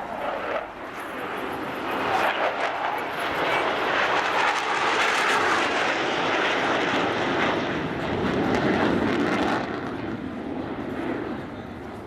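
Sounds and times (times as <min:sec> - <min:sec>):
airplane flying past: 0:00.0 - 0:12.0.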